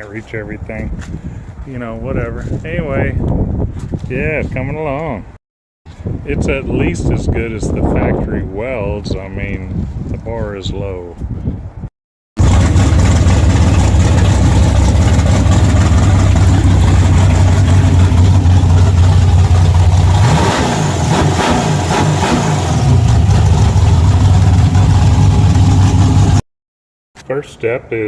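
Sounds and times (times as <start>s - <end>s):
car engine idling: 12.4s - 26.4s.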